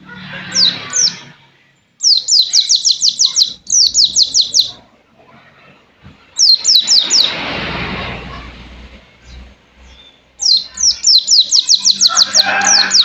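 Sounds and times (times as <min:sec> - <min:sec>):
bird singing sharp high notes: 0:02.0 - 0:04.8, 0:06.4 - 0:07.5, 0:09.2 - 0:13.0.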